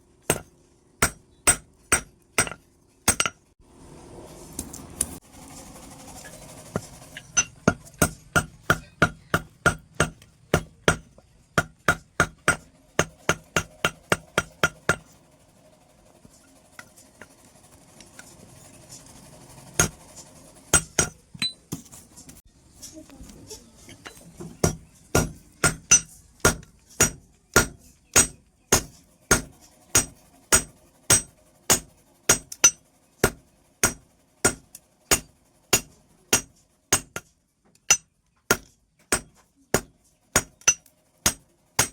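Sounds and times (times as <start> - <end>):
hammer striking metal: 0.3 - 3.5, 7.2 - 15.1, 19.8 - 20.0, 20.7 - 21.6, 24.6 - 37.3, 37.9 - 41.9.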